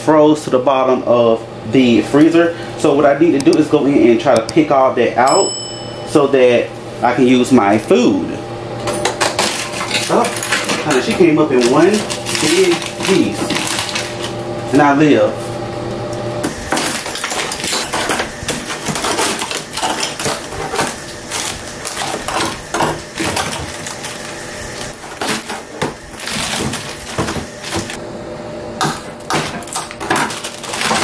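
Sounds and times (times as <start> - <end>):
ice chunks clunking and scraping: 9.3 - 14.3, 16.5 - 24.2, 24.8 - 27.9, 29.3 - 31.0.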